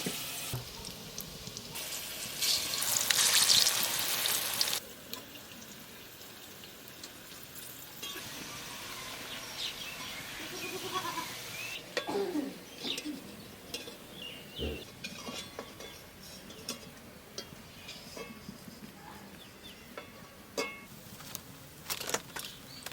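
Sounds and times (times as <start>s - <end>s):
oil frying: 0.0s - 10.4s
goat bleating: 10.4s - 11.4s.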